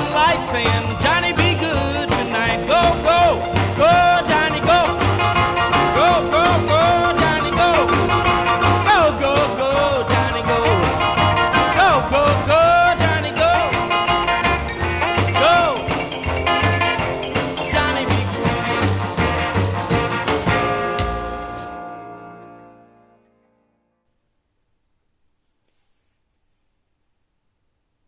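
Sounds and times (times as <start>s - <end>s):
upbeat song from cassette: 0.0s - 21.0s
sliding lead melody: 0.0s - 24.0s.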